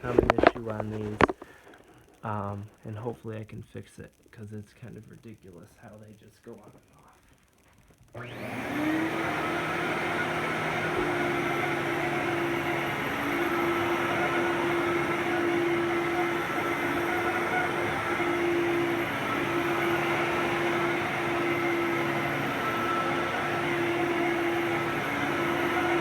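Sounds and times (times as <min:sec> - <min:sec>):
vacuum cleaner running: 0:00.0 - 0:01.5, 0:08.2 - 0:26.0.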